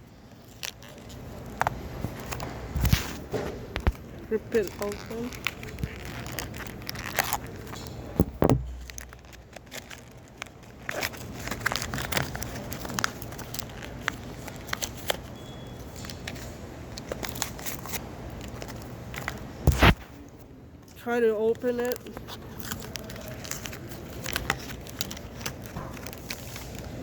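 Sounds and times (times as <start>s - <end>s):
packaging crinkling: 0.3s - 20.1s, 21.5s - 27.0s
packaging being torn: 0.4s - 3.1s, 3.8s - 20.1s, 21.9s - 27.0s
thump: 8.2s - 9.0s.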